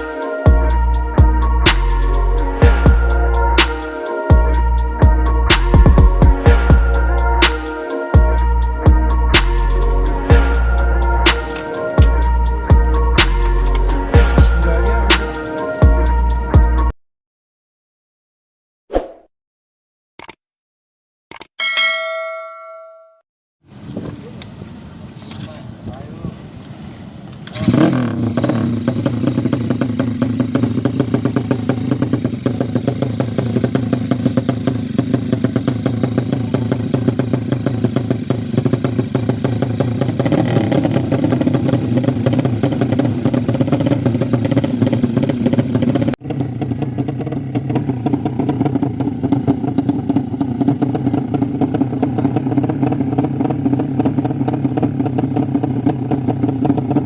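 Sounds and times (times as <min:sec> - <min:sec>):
motorcycle engine idling fast: 0:27.7 - 0:57.0.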